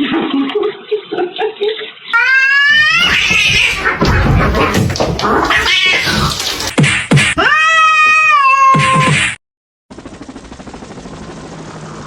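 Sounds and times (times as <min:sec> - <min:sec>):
cat yowling: 0:02.2 - 0:06.7, 0:07.4 - 0:09.2
scuffling and knocks: 0:02.8 - 0:06.7.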